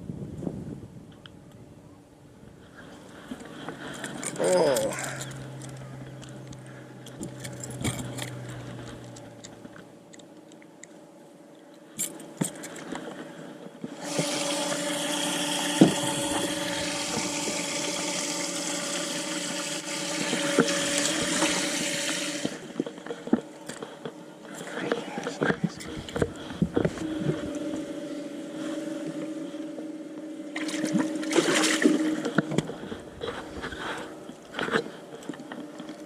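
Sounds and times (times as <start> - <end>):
low motor hum: 0.0 - 11.2, 13.6 - 36.0
water rushing: 14.0 - 22.7, 30.5 - 32.3.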